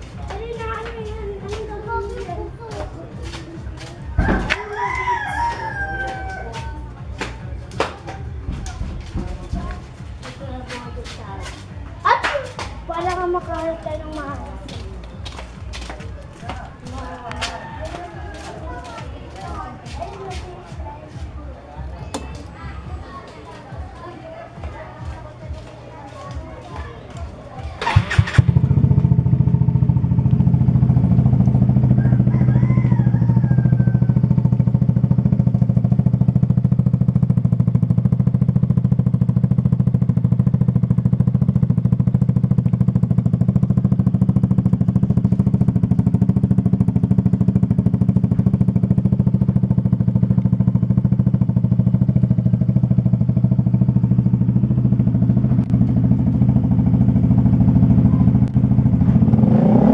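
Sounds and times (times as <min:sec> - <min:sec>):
scooter engine idling: 0:00.0 - 0:59.9.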